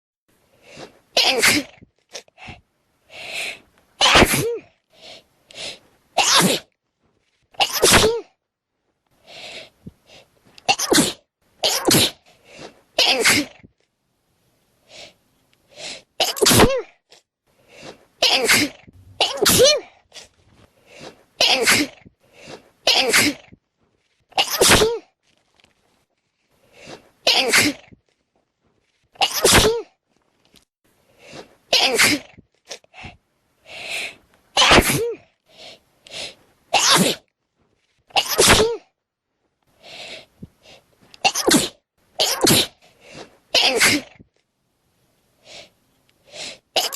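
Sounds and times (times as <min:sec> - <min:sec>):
quiet in-breath: 0:00.4 - 0:01.0, 0:02.3 - 0:03.7, 0:04.9 - 0:05.9, 0:09.1 - 0:10.3, 0:12.2 - 0:12.8, 0:14.8 - 0:16.1, 0:17.5 - 0:18.1, 0:20.1 - 0:21.3, 0:22.2 - 0:22.8, 0:26.5 - 0:27.1, 0:31.0 - 0:31.6, 0:32.8 - 0:34.2, 0:35.4 - 0:36.4, 0:39.7 - 0:40.9, 0:42.8 - 0:43.4, 0:45.4 - 0:46.7
person sneezing: 0:01.2 - 0:01.8, 0:04.0 - 0:04.7, 0:06.2 - 0:06.7, 0:07.6 - 0:08.3, 0:10.7 - 0:12.2, 0:13.0 - 0:13.6, 0:16.2 - 0:16.9, 0:18.2 - 0:20.0, 0:21.4 - 0:22.1, 0:22.9 - 0:23.5, 0:24.4 - 0:25.0, 0:27.3 - 0:27.9, 0:29.2 - 0:29.9, 0:31.7 - 0:32.4, 0:34.6 - 0:35.2, 0:36.8 - 0:37.2, 0:38.2 - 0:38.8, 0:41.2 - 0:42.8, 0:43.6 - 0:44.2.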